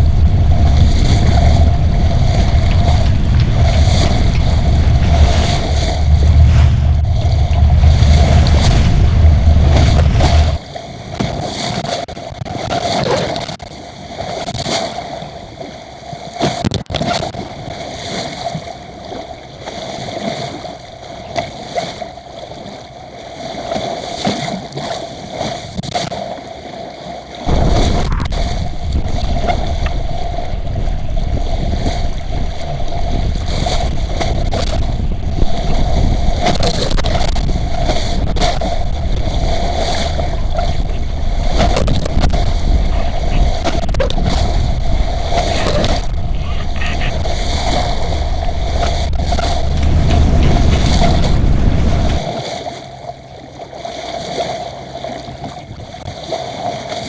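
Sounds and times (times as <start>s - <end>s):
steady hum: 0.0s - 11.2s, 27.4s - 56.0s
wind rumble on microphone: 0.0s - 15.7s, 27.4s - 57.0s
water gurgling along a hull: 0.0s - 57.0s.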